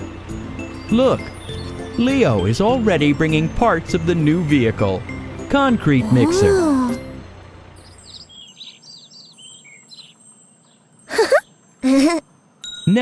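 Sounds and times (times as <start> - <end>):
small birds chirping: 0.6 - 3.4, 7.6 - 12.2.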